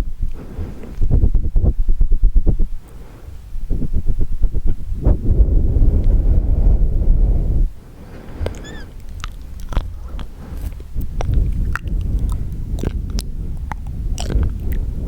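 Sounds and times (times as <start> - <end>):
wet mouth clicks and smacks: 8.4 - 14.9
squeaky chirp: 8.5 - 9.0.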